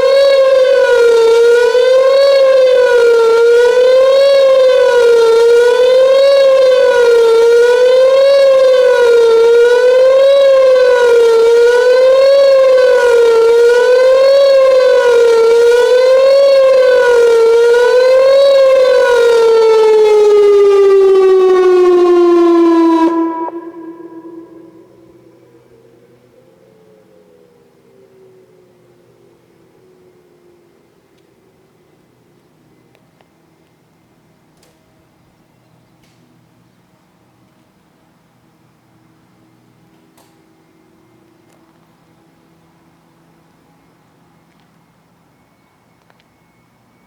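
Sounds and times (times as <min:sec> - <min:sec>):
wavering electronic siren: 0:00.0 - 0:30.3.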